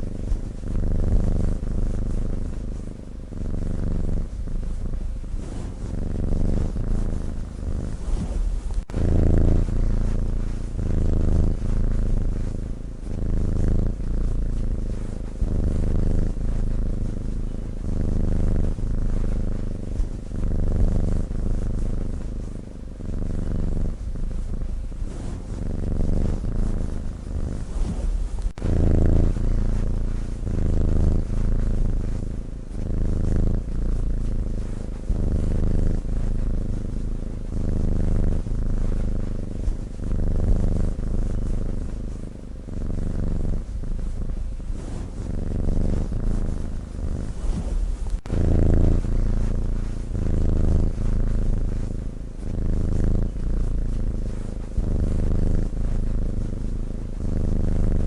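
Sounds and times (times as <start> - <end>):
cat purring: 0.0 - 58.0.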